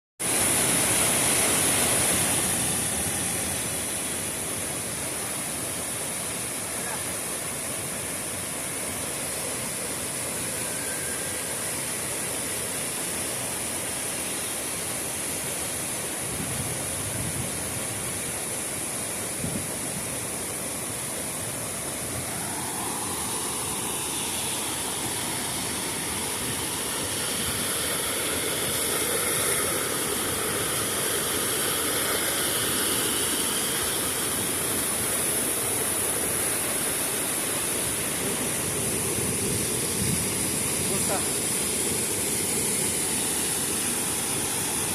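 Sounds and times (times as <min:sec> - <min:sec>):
waterfall roaring: 0:00.2 - 0:44.9.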